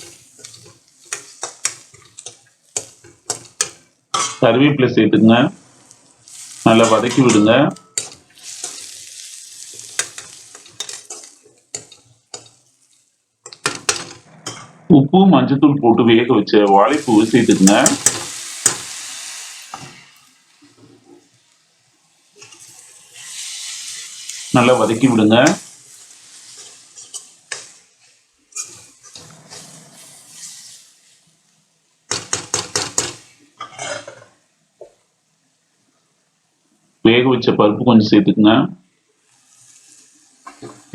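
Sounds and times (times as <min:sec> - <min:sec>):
spatula scraping a pan: 0:00.0 - 0:04.4, 0:05.7 - 0:14.7, 0:16.9 - 0:21.5, 0:22.1 - 0:31.3, 0:32.1 - 0:34.4, 0:39.3 - 0:40.9
vegetables sizzling in hot oil: 0:00.0 - 0:04.5, 0:05.3 - 0:14.2, 0:16.8 - 0:37.0, 0:38.9 - 0:40.9
sharp taps on pan: 0:32.1 - 0:33.2.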